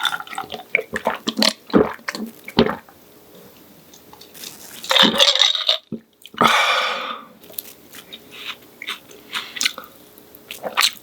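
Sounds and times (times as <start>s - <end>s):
chewing: 7.4s - 11.0s.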